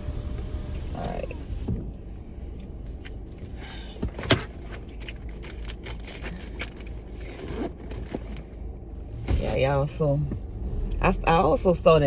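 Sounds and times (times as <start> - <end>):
low steady rumble: 0.0 - 12.0
clicks and rattles of handling: 4.1 - 8.5.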